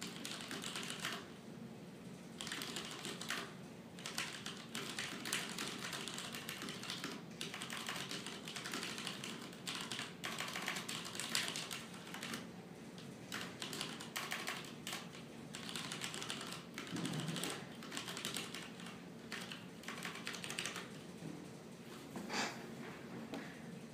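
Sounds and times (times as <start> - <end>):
mechanical keyboard typing: 0.0 - 1.3, 2.4 - 12.5, 13.3 - 21.0.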